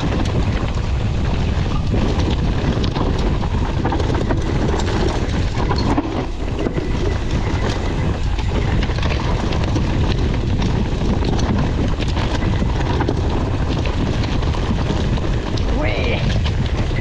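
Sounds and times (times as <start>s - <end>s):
crackles: 0.0s - 17.0s
wind buffeting microphone: 0.0s - 17.0s.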